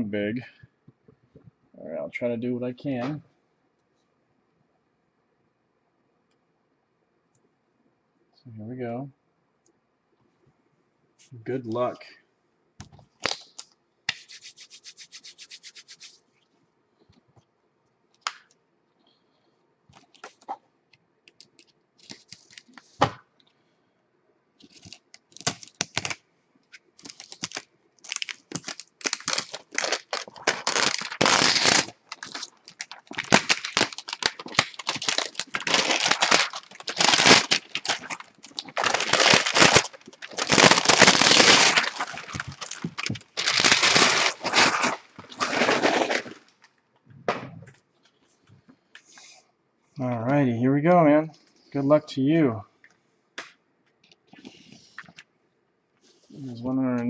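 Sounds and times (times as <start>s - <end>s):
packaging tearing and crinkling: 13.2s - 13.6s, 24.6s - 26.2s, 27.0s - 46.6s.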